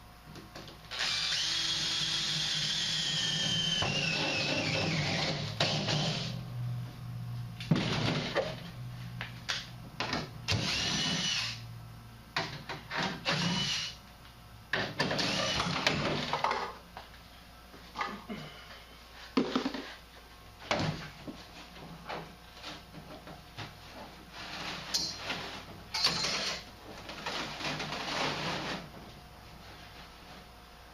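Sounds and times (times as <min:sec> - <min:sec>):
power drill drilling sheet metal: 0:00.9 - 0:06.4, 0:10.5 - 0:11.6, 0:13.2 - 0:14.0, 0:15.0 - 0:16.2, 0:26.0 - 0:26.6.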